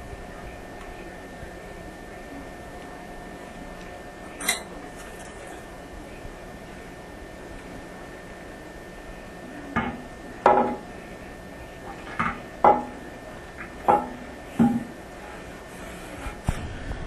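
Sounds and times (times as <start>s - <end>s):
porcelain toilet tank knocking: 13.9s - 14.9s.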